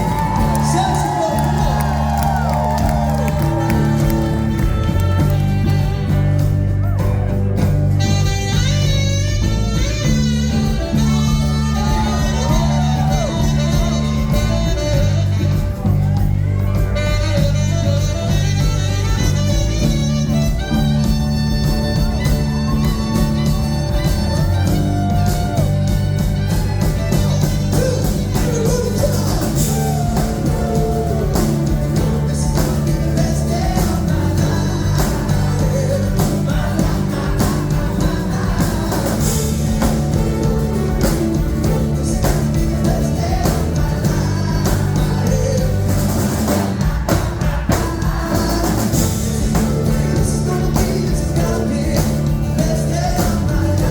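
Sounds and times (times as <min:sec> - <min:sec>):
live pop-rock band: 0:00.0 - 0:53.9
lead vocals singing: 0:27.5 - 0:53.9.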